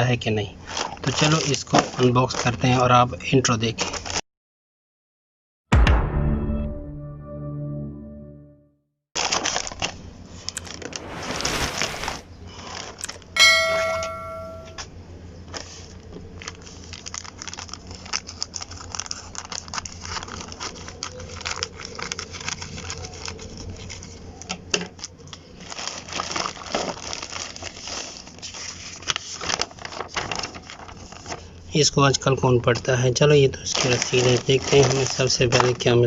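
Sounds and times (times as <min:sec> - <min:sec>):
short ringing tone: 0:13.4 - 0:14.8
packaging tearing: 0:16.4 - 0:24.0, 0:25.6 - 0:28.3
plastic packaging crinkling: 0:16.4 - 0:24.2, 0:25.5 - 0:31.4, 0:33.7 - 0:35.8.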